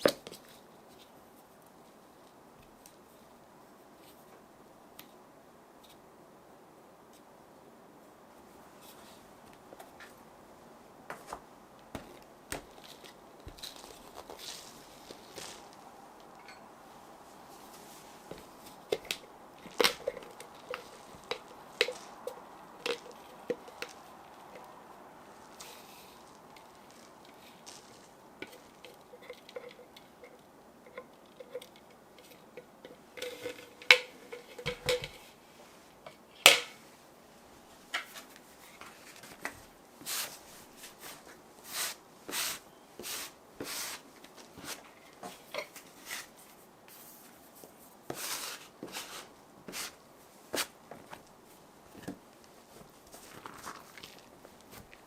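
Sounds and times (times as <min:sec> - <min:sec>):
soft rustling: 0:08.3 - 0:36.2, 0:36.8 - 0:55.0
utensils and dishes clinking: 0:16.4 - 0:16.7.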